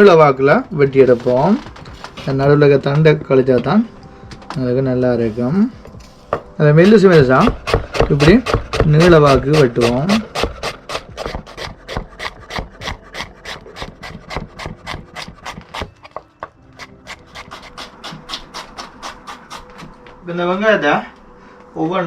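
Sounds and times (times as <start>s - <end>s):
knife slicing onion on board: 6.3s - 19.9s.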